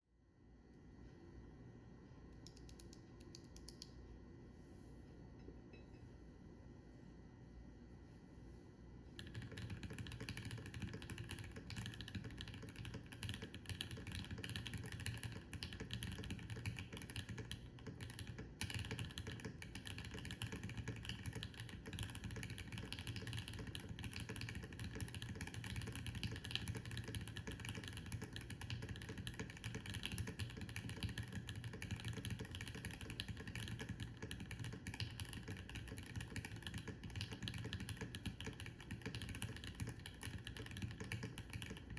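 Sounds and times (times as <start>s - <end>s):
mechanical keyboard typing: 9.2s - 41.9s.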